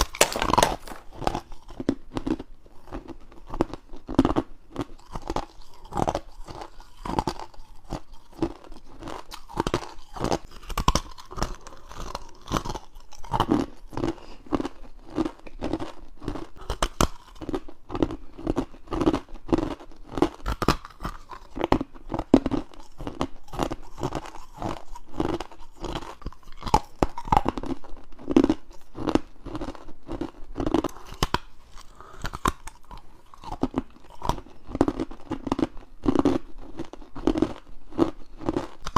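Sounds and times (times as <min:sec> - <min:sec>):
crunching bites into ice: 0:00.0 - 0:01.4.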